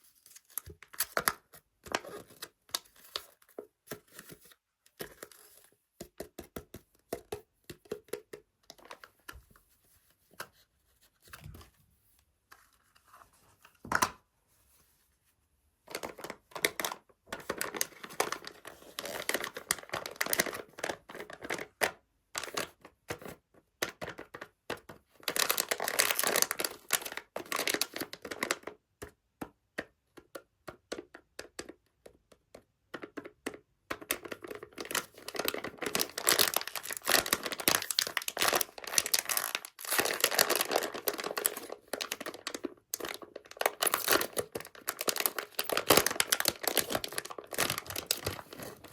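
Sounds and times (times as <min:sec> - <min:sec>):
plastic wrapping crinkling and tearing: 0:15.9 - 0:21.7, 0:25.2 - 0:28.6, 0:34.7 - 0:48.9.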